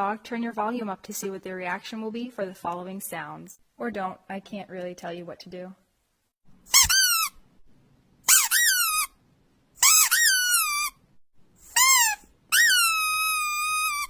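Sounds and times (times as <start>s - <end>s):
squeaky dog toy squeaking: 6.7s - 7.4s, 8.3s - 9.2s, 9.8s - 11.0s, 11.6s - 14.0s.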